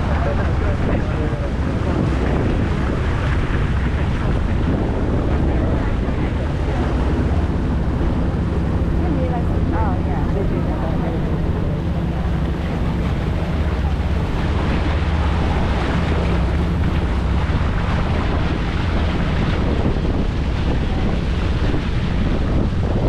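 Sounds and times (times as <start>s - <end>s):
boat engine drone: 0.0s - 23.0s
water rushing along hull: 0.0s - 23.0s
wind buffeting microphone: 0.0s - 23.0s.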